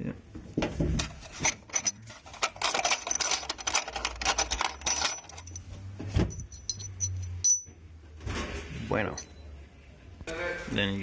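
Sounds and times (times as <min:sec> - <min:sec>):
small metal parts clinking: 0:01.2 - 0:07.8.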